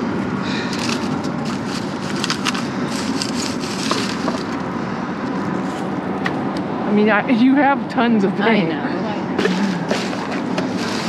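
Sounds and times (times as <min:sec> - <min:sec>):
trash rummaged through by hand: 0:09.4 - 0:11.0.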